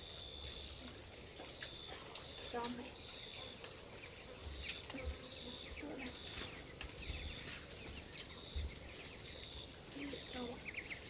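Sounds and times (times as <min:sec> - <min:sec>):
high-pitched insect chorus: 0:00.0 - 0:11.0.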